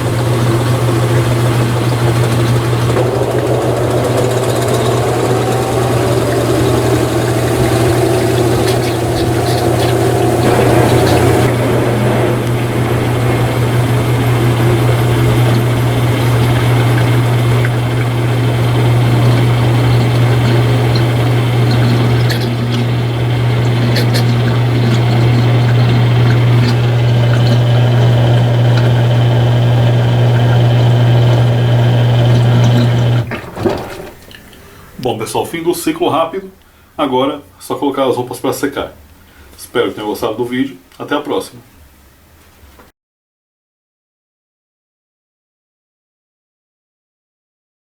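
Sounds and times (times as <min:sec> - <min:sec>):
washing machine hum: 0:00.0 - 0:37.7.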